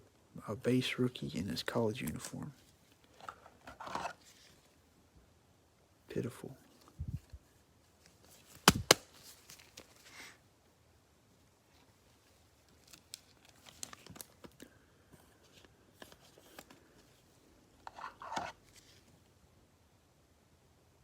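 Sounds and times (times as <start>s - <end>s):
cards clicking and rustling: 3.0s - 4.6s, 8.1s - 10.1s, 15.5s - 17.1s, 17.8s - 19.1s
packaging crinkle: 8.0s - 10.4s, 12.2s - 14.7s.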